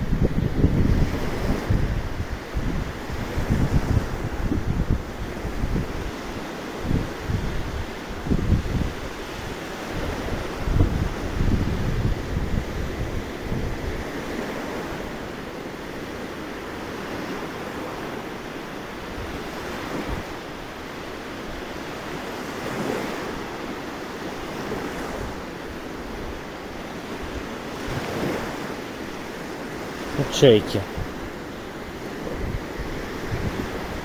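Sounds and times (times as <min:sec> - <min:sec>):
wind buffeting microphone: 0:00.0 - 0:14.8, 0:30.8 - 0:34.0
surf breaking on shore: 0:24.4 - 0:34.0.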